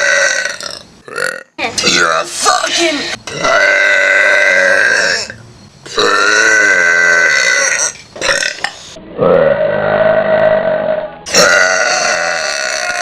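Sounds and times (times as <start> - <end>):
person burping: 0.0 - 2.2, 3.3 - 9.5, 10.2 - 13.0.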